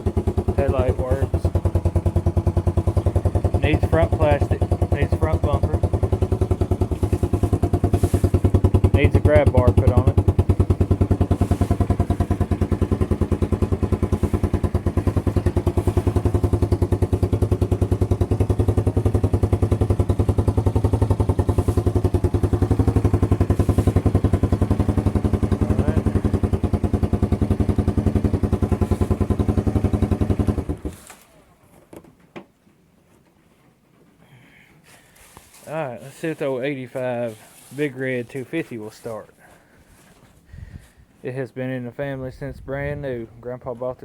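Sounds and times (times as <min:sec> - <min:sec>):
quad bike engine idling: 0:00.0 - 0:31.8.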